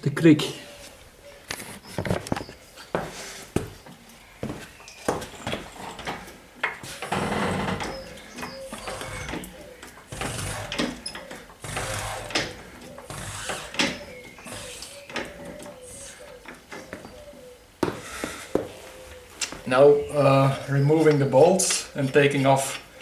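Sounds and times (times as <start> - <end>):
car jack scraping and clicking: 5.7 - 15.6.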